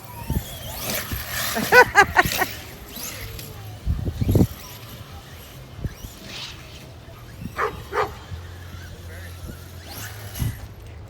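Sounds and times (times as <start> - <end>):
dog yipping barks: 7.6 - 8.2.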